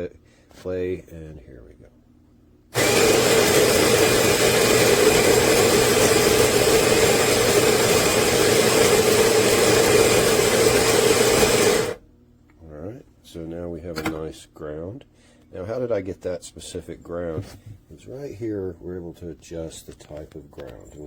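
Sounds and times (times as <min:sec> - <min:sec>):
coffee grinder motor whirring: 0:02.8 - 0:12.0.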